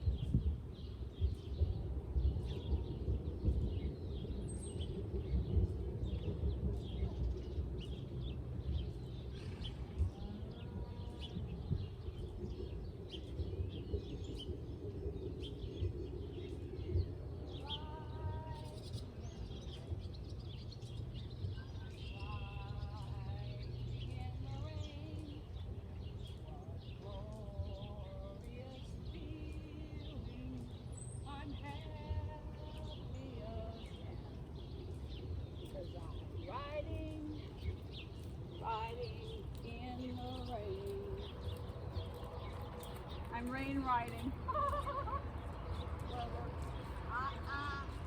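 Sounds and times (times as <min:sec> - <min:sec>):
birds chirping and calling: 0:00.0 - 0:48.0
steady low rumble: 0:00.0 - 0:48.0.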